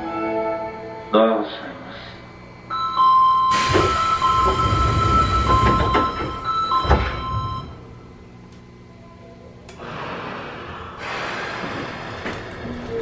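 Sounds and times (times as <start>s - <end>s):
steady hum: 0.0s - 13.0s
two-tone door chime: 2.7s - 7.8s
doors sliding shut: 3.5s - 7.7s.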